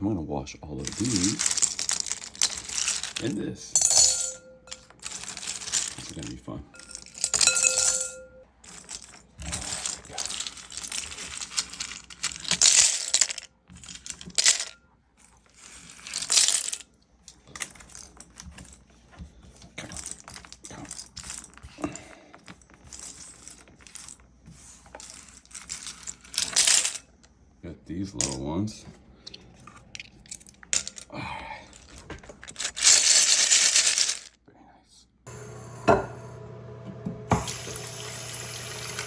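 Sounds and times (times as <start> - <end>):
plastic keycaps clattering: 0.8 - 7.9, 8.6 - 14.7, 15.6 - 18.8, 19.8 - 24.2, 31.7 - 34.4.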